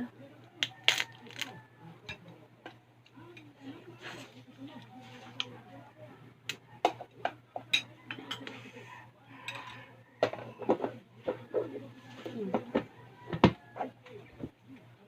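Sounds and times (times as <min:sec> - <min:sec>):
crab shells cracking: 0:00.6 - 0:01.5
dishes and utensils clinking: 0:06.8 - 0:08.7, 0:09.5 - 0:11.7.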